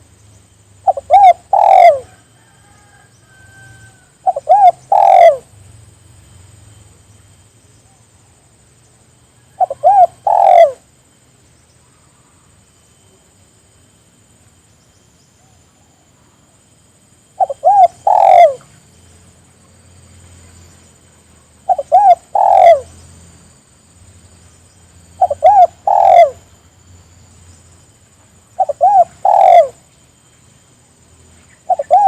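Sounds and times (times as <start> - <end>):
dove cooing: 0.8 - 2.2, 3.6 - 5.5, 9.5 - 10.8, 17.4 - 18.7, 21.6 - 23.0, 25.2 - 26.5, 28.6 - 29.9, 31.6 - 32.0.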